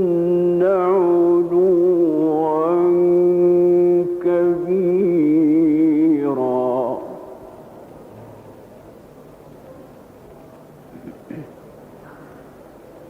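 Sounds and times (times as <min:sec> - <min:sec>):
man chanting melodically: 0:00.0 - 0:07.6.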